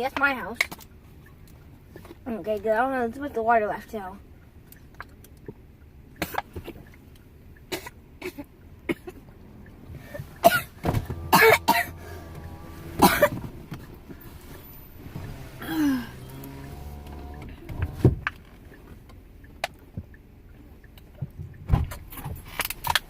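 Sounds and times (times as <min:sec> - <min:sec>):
person coughing harshly: 0:10.4 - 0:10.7, 0:11.3 - 0:12.0, 0:13.0 - 0:13.3.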